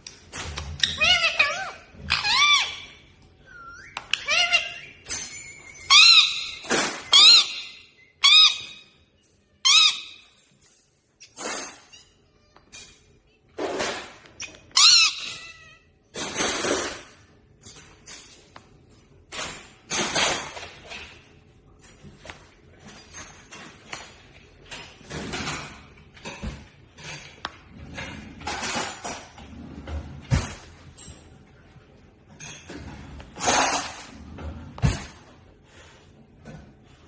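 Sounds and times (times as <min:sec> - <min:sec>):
parrots screeching and squawking: 0:00.4 - 0:10.5, 0:11.2 - 0:13.0, 0:14.0 - 0:17.2.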